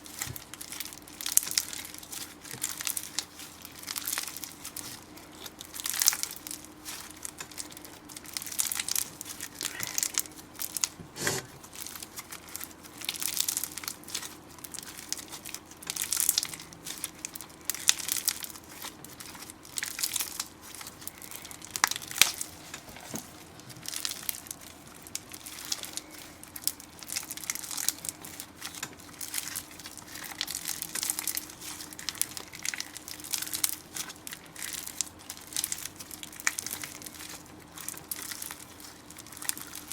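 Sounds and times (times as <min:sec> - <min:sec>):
slime squelching and crackling: 0:00.0 - 0:39.9.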